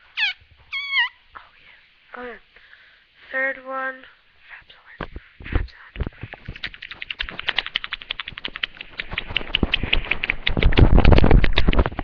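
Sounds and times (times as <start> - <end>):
beatbox bass hits: 6.3 - 12.0
beatbox hi-hat clicks: 6.4 - 12.0.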